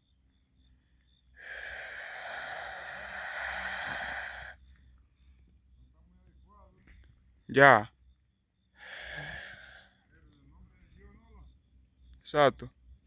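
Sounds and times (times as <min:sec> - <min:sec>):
breathy hiss: 0:01.3 - 0:04.8, 0:08.7 - 0:10.2.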